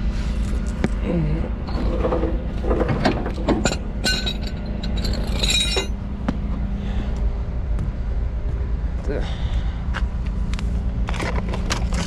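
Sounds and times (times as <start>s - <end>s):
truck engine running: 0.0s - 12.0s
metal chain clinking and rattling: 1.7s - 6.0s.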